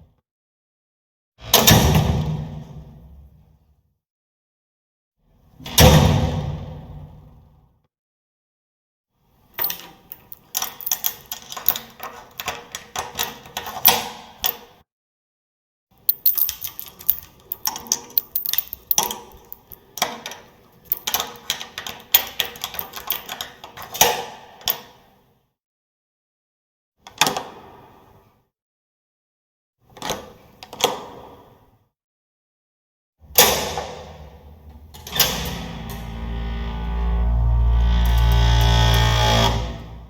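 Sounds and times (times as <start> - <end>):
door handle and latch rattling: 16.1 - 19.8, 20.9 - 23.4.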